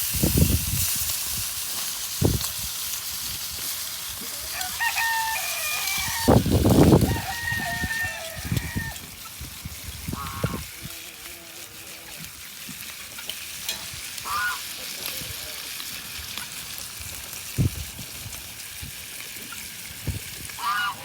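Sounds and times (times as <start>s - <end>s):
steady high hiss: 0.0s - 21.0s
rooster crowing: 4.4s - 9.1s, 20.6s - 21.0s.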